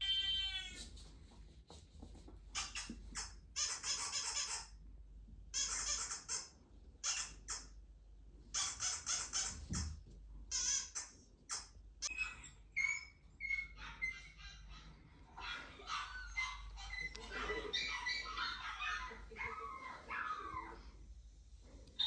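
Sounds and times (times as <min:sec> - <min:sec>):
harsh bird squawks: 0:02.6 - 0:04.8, 0:05.6 - 0:07.8, 0:08.5 - 0:09.8.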